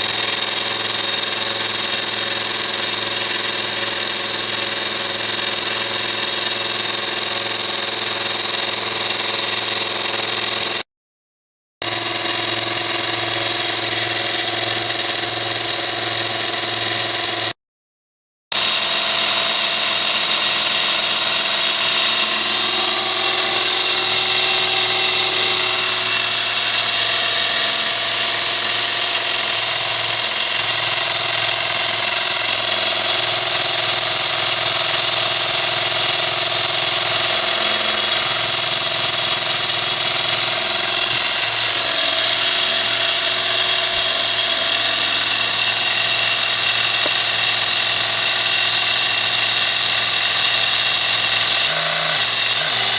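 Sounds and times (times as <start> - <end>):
belt sander motor whirring: 0.0 - 10.8, 11.8 - 17.6, 18.6 - 52.9.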